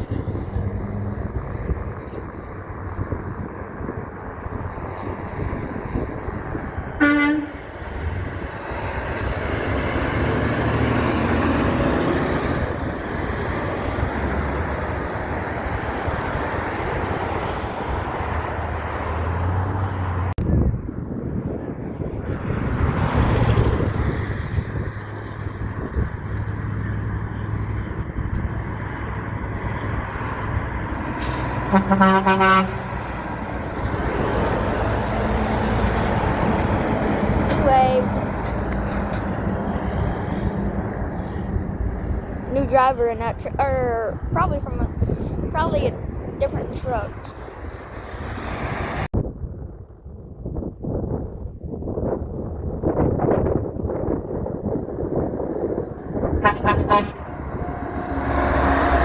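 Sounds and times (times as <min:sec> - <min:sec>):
heavy trucks passing: 0:00.0 - 0:49.2, 0:52.3 - 0:59.0
truck horn honking: 0:06.9 - 0:08.0, 0:30.0 - 0:36.8, 0:56.2 - 0:59.0.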